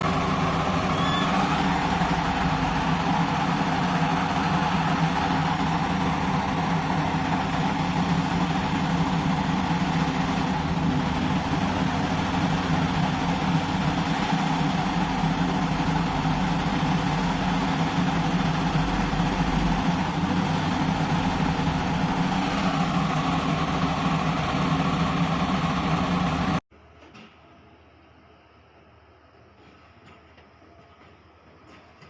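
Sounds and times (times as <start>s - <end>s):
drilling machinery engine running: 0.0s - 26.6s.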